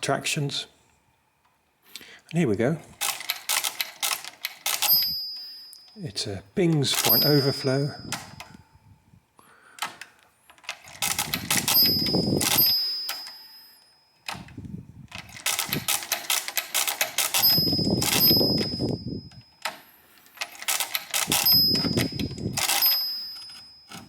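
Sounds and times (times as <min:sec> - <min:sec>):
calculator bell pinging: 0:03.0 - 0:08.9, 0:10.6 - 0:14.6, 0:15.2 - 0:24.0
clicking gear clatter: 0:20.4 - 0:24.0.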